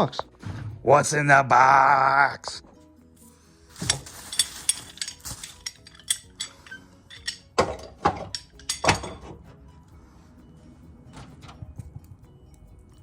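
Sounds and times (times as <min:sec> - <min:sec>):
metal parts clinking: 0:03.7 - 0:09.4.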